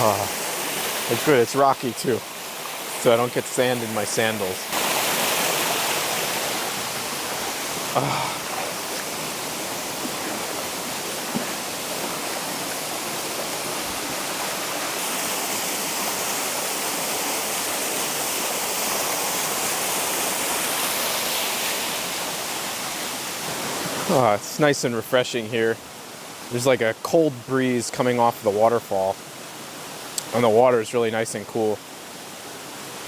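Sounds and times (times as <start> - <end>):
waterfall roaring: 0.0 - 22.6.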